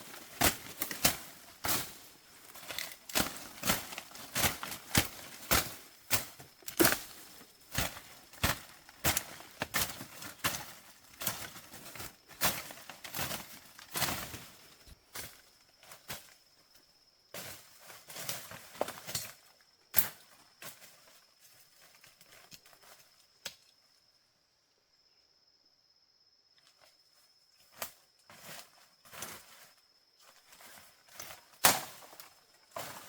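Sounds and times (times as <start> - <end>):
rustling leaves: 0.0 - 16.4.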